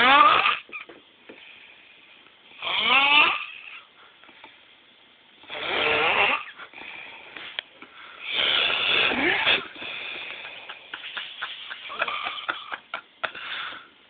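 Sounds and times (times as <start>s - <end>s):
man snoring: 0.0s - 0.6s, 2.6s - 3.8s, 5.5s - 6.6s, 8.2s - 9.8s
quiet breathing: 1.2s - 2.6s, 3.7s - 4.8s, 6.5s - 8.8s, 13.2s - 14.0s.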